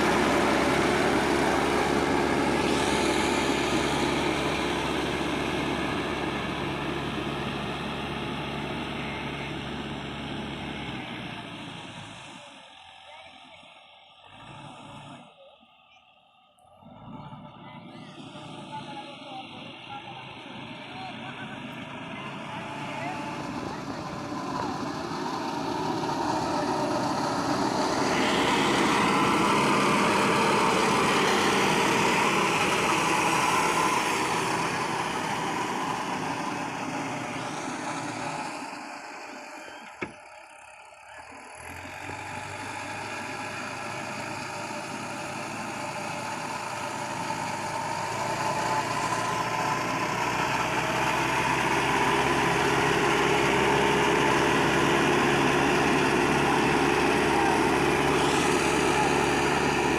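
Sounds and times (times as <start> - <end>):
diesel engine running: 0.0 - 59.9.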